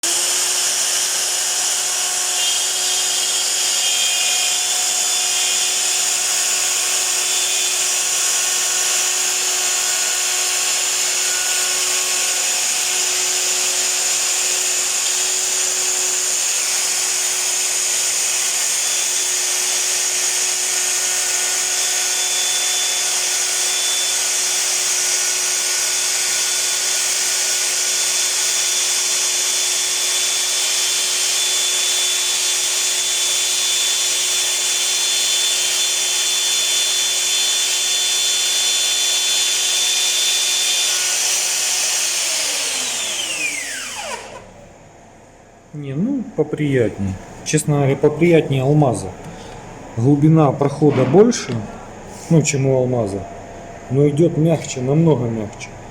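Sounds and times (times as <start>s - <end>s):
hand router spindle tone: 0.0s - 44.5s
router cutting hiss: 0.0s - 44.7s, 54.0s - 55.7s.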